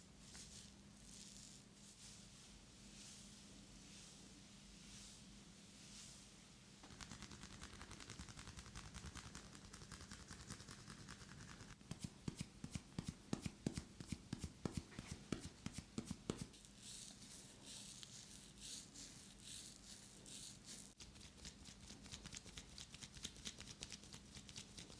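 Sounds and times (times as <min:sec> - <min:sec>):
hands rubbing skin and hair: 0:00.2 - 0:04.2, 0:05.8 - 0:24.9
hands patting: 0:06.8 - 0:16.5.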